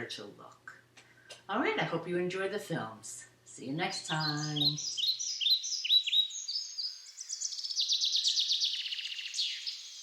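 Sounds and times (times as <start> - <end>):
songbird chirps and trill: 3.5 - 10.0.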